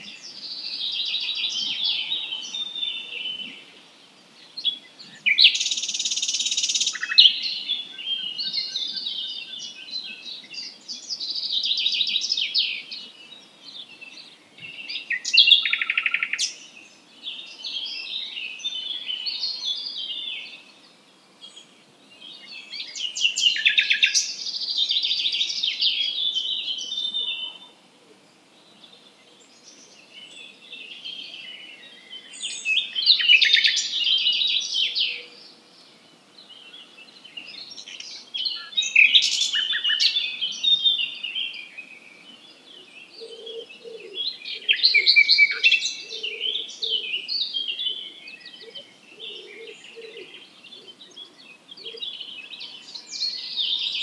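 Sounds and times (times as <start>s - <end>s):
faint background noise: 0.0s - 54.0s
songbird twittering: 4.5s - 20.8s, 28.7s - 54.0s.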